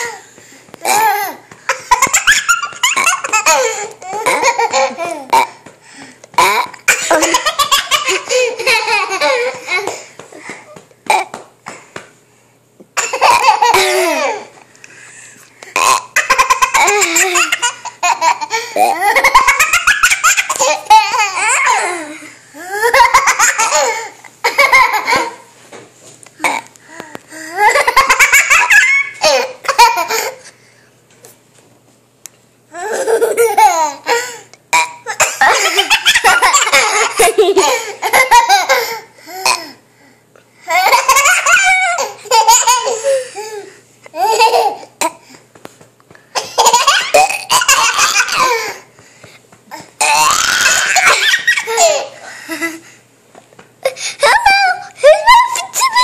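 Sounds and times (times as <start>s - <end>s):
boy laughing hysterically: 0.8s - 5.3s, 6.4s - 10.1s, 13.0s - 14.5s, 16.2s - 25.5s, 27.4s - 30.4s, 32.8s - 34.3s, 35.0s - 39.2s, 40.7s - 45.0s, 46.4s - 48.9s, 50.0s - 52.9s, 53.8s - 56.0s
boy gasping: 26.4s - 27.7s, 53.8s - 55.0s.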